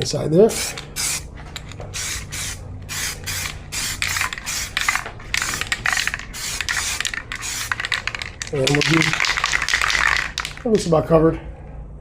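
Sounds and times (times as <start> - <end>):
aerosol spray can hissing: 0.6 - 1.3, 1.9 - 10.6.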